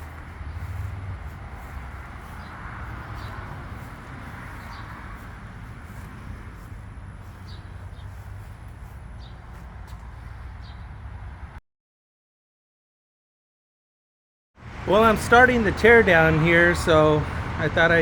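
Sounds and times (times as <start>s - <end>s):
steady low rumble: 0.0s - 11.6s.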